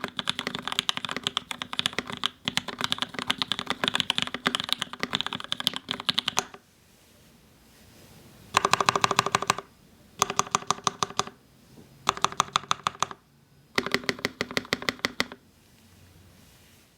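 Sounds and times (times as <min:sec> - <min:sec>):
mechanical keyboard typing: 0:00.0 - 0:06.6, 0:08.5 - 0:11.4, 0:12.0 - 0:15.4.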